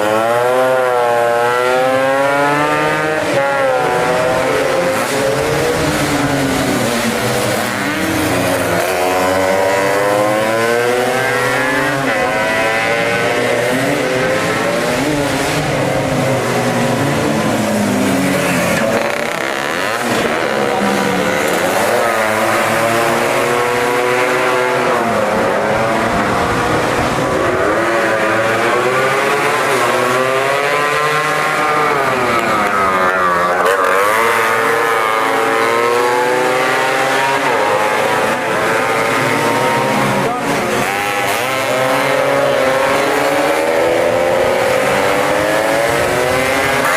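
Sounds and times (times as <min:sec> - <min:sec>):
racing scooter engines revving: 0:00.0 - 0:46.9.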